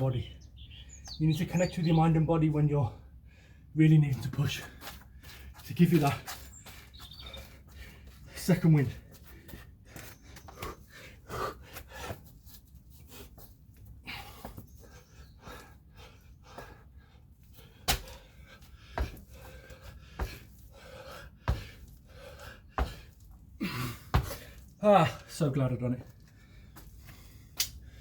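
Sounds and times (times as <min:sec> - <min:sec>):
man panting hard: 0:06.7 - 0:08.4, 0:09.0 - 0:12.4, 0:13.0 - 0:24.7, 0:26.3 - 0:28.0.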